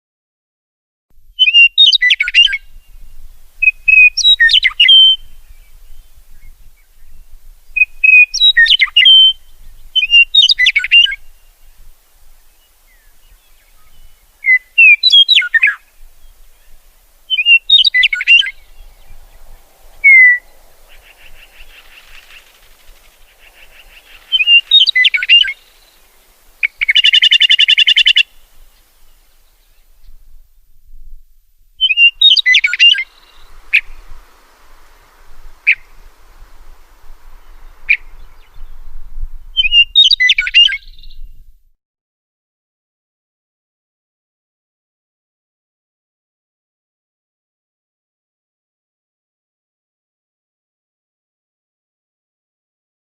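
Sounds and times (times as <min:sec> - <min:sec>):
songbird whistled phrases: 0:01.4 - 0:03.0, 0:03.6 - 0:05.4, 0:07.8 - 0:11.3, 0:12.9 - 0:26.0, 0:26.6 - 0:28.4, 0:31.8 - 0:34.1, 0:35.6 - 0:35.9, 0:37.4 - 0:38.8, 0:39.5 - 0:41.3
harsh buzzy bird call: 0:13.8 - 0:29.1, 0:31.8 - 0:38.8
bird buzzy trill: 0:17.3 - 0:28.3.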